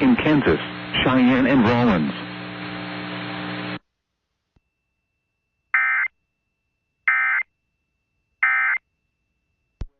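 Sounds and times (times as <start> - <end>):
steady hiss and hum: 0.0 - 4.5.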